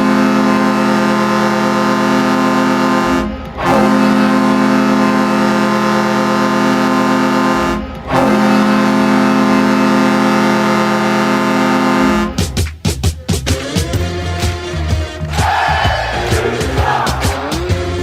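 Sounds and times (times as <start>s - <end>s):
arena goal horn blaring: 0.0s - 12.6s.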